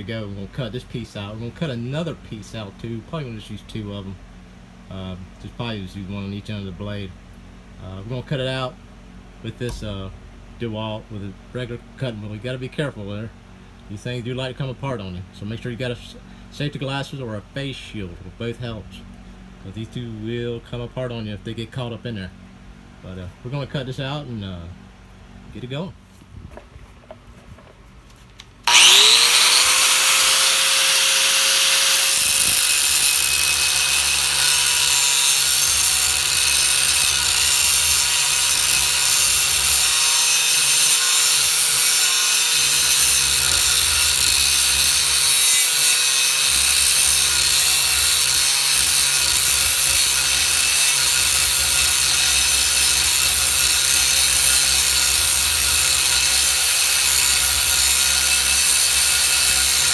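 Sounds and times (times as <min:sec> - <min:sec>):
angle grinder whine: 0:28.6 - 0:59.9
grinder wheel cutting steel: 0:28.6 - 0:59.9.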